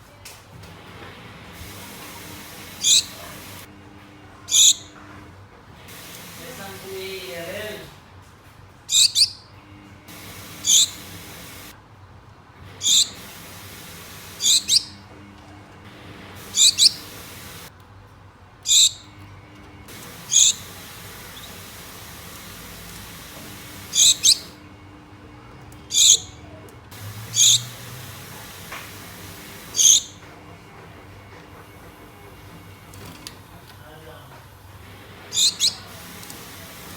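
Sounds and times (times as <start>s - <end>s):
finches calling: 1.6s - 3.7s, 4.5s - 5.0s, 8.9s - 9.4s, 10.1s - 11.7s, 12.8s - 15.1s, 16.0s - 17.7s, 18.7s - 19.2s, 19.9s - 24.7s, 25.9s - 30.2s, 35.0s - 36.9s.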